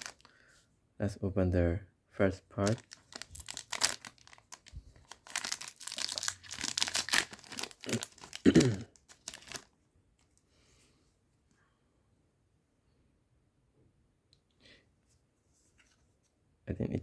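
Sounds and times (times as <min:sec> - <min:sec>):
wrapper tearing and crinkling: 0:00.0 - 0:00.3, 0:02.6 - 0:09.8.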